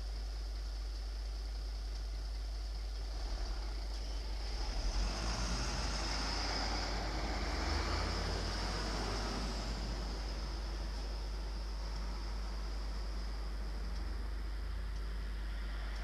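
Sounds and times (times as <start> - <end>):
vehicle passing: 4.3 - 13.4.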